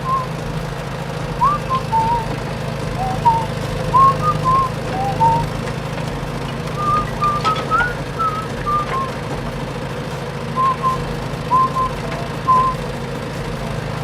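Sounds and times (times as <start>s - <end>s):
short whistled chirps: 0.0s - 0.3s, 1.4s - 2.3s, 3.0s - 5.5s, 6.8s - 9.2s, 10.6s - 12.8s
low hum: 1.3s - 5.6s.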